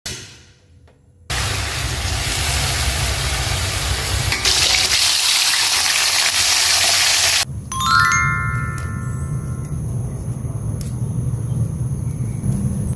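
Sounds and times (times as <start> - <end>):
tap water running: 1.3 - 7.4
ringing chime notes: 7.7 - 9.9.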